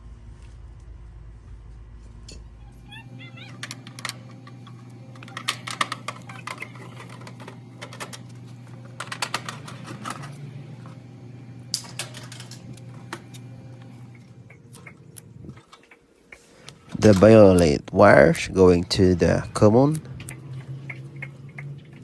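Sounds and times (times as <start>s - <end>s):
steady low hum: 0.0s - 22.0s
clicks of handling wires: 3.6s - 11.0s, 11.7s - 17.7s.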